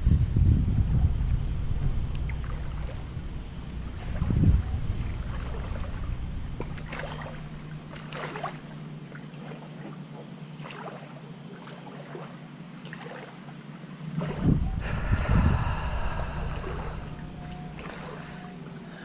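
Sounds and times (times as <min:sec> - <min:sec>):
wind noise on microphone: 0:00.0 - 0:09.0, 0:14.0 - 0:18.7.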